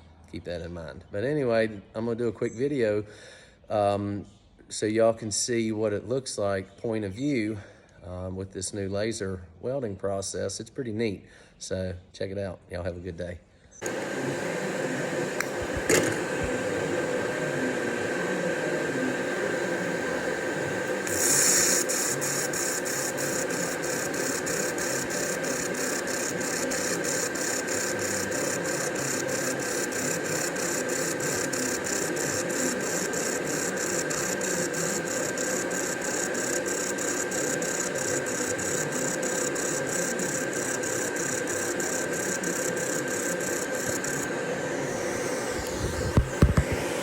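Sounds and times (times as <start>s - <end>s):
high hissing pulse: 13.8s - 47.0s
laser welding machine hum: 13.8s - 47.0s.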